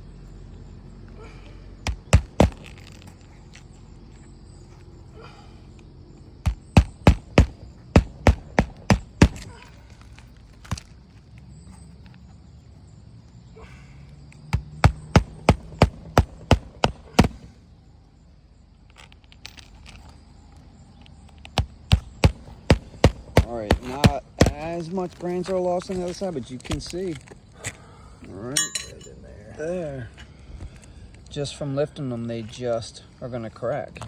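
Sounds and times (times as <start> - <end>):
hammer striking nails: 1.8 - 2.7, 6.4 - 9.5, 14.5 - 17.5, 21.6 - 24.8.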